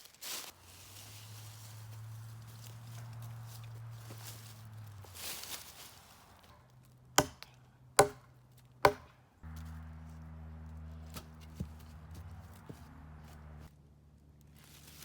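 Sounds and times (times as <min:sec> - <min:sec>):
chopping into wood: 0:07.2 - 0:09.2.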